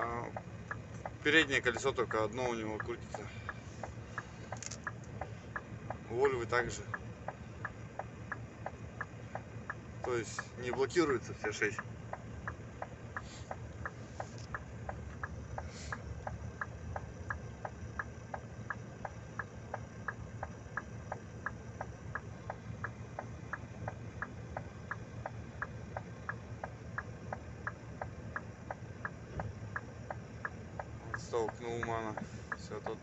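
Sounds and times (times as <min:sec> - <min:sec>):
regular ticking: 0:00.0 - 0:33.0
truck engine idling: 0:00.0 - 0:33.0.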